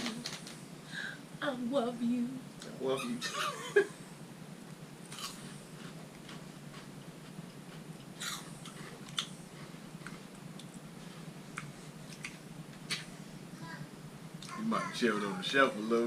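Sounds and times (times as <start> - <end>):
chewing crunchy snacks: 5.1 - 9.4.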